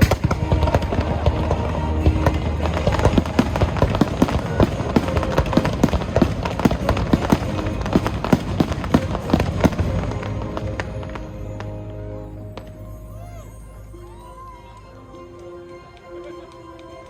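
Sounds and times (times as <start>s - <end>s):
firework bursts and crackles: 0.0s - 11.9s
music: 0.0s - 17.0s.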